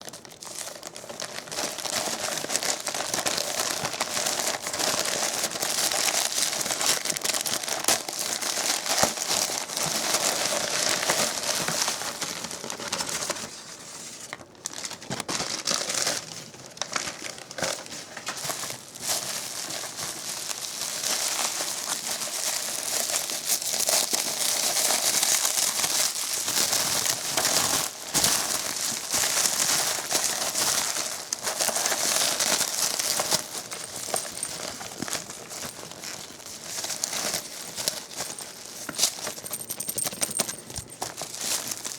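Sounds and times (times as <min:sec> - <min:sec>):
packaging crinkling and clicking: 0:14.3 - 0:41.9.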